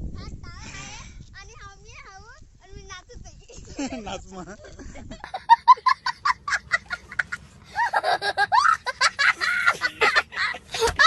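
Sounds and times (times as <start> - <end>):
voices laughing and shrieking: 3.5 - 11.0
high-pitched laughter: 4.7 - 11.0.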